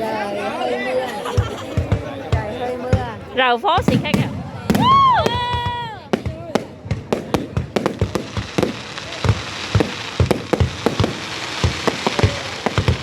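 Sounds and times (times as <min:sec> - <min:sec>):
fireworks bangs and pops: 0:01.3 - 0:13.0
crackling hiss: 0:04.0 - 0:13.0.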